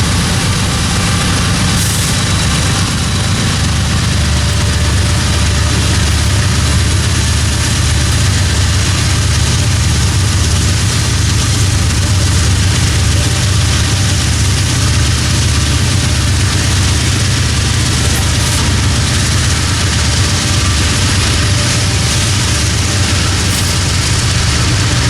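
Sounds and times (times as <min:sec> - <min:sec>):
freight train diesel rumble: 0:00.0 - 0:25.0.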